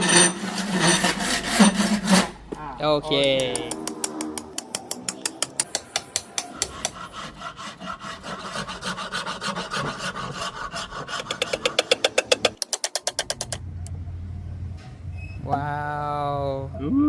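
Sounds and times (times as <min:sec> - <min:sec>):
file rasping on axe: 0:00.0 - 0:02.4, 0:06.2 - 0:12.6.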